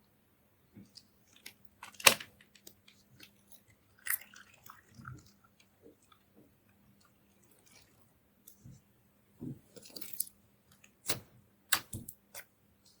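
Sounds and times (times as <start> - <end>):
slime squelching: 0.8 - 8.8.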